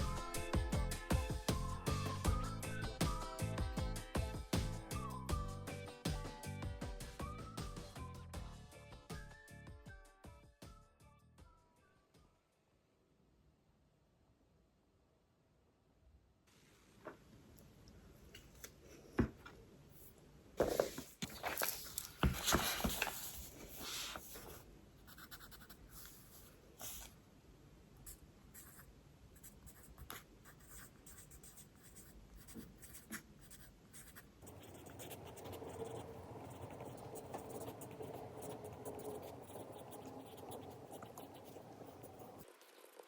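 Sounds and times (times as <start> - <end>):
pen scratching on paper: 21.6 - 27.1, 28.6 - 42.5
steady background hum: 23.4 - 42.5.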